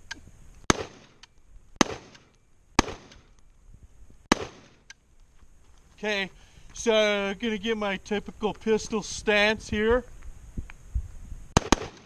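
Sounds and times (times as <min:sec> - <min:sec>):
gunshots with echo: 0:04.3 - 0:04.8, 0:11.6 - 0:12.0.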